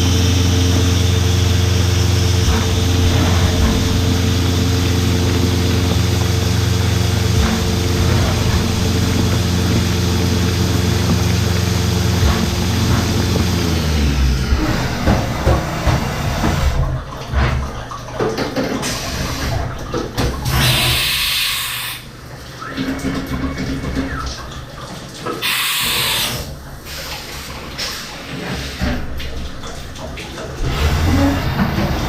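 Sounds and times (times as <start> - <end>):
milling machine humming: 0.0 - 18.2, 18.8 - 32.0
coolant spraying and splashing: 0.0 - 32.0
hiss: 20.6 - 22.0, 25.4 - 27.1.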